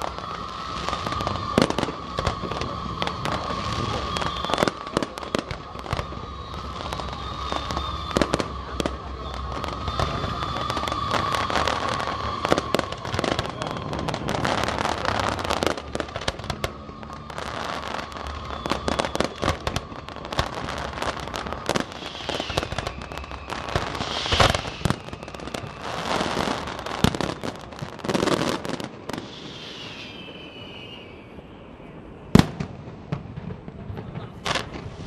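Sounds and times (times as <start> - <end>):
fireworks crackling and bangs: 0.0 - 35.0
fireworks whistling glides: 0.0 - 35.0.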